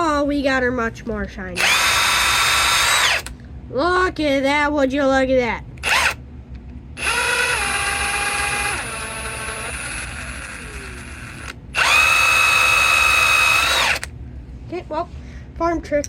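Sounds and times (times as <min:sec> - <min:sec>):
electric power drill running: 0:01.6 - 0:03.3, 0:05.8 - 0:06.2, 0:07.0 - 0:14.1.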